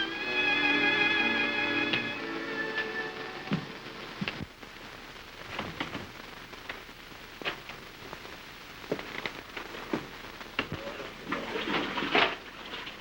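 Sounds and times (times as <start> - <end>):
film soundtrack hiss: 0.0 - 13.0.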